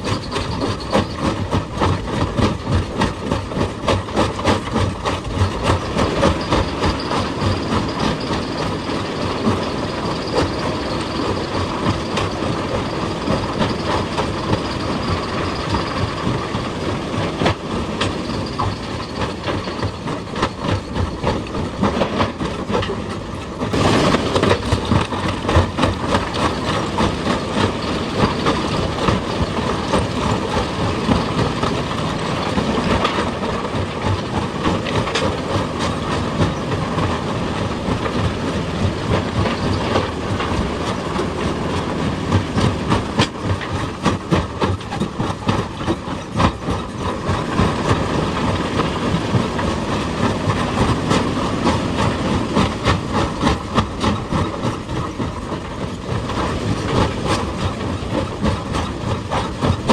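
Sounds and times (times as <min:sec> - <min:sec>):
excavator engine: 0:00.0 - 0:59.9
rapid clattering and knocking on rock: 0:00.0 - 0:59.9.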